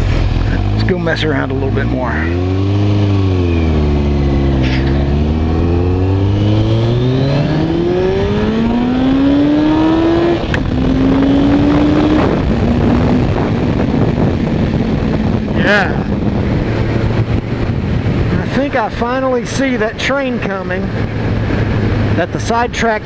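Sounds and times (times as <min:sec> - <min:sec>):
vehicle engine accelerating: 0:00.0 - 0:23.0.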